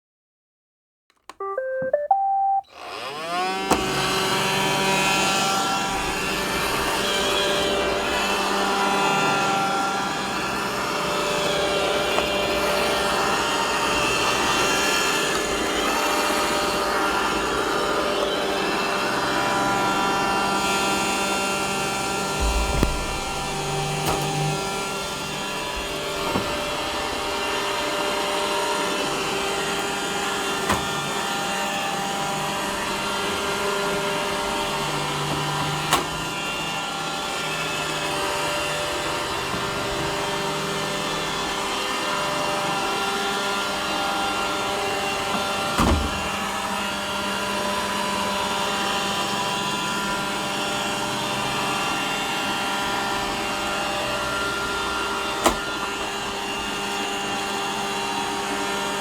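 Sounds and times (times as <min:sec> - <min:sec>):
robot vacuum motor whirring: 0:02.7 - 0:07.8
low thumps: 0:22.4 - 0:24.8.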